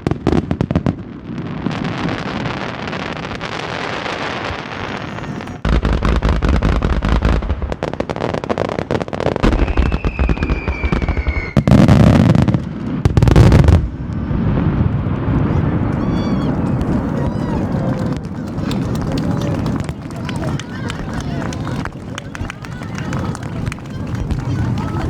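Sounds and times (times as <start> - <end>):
fireworks booms: 0.0 - 25.0
fireworks crackling and popping: 0.0 - 25.0
falling firework whistle: 1.2 - 8.4, 9.4 - 12.6, 15.4 - 25.0.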